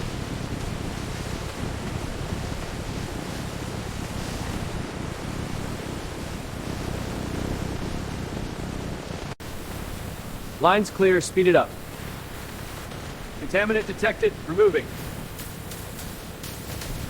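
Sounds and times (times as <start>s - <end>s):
even hiss: 9.4s - 17.0s
machinery rumble: 9.4s - 17.0s.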